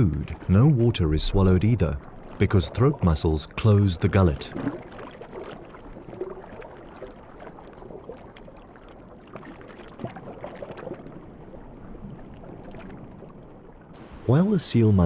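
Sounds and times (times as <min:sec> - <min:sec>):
water moving underwater: 0:00.0 - 0:15.0.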